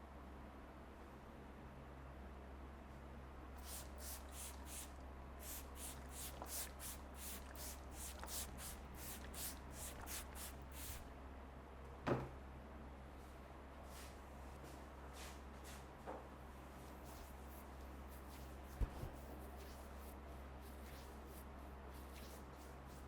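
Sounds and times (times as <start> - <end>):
hands rubbing over hair: 3.6 - 11.0, 16.9 - 23.0.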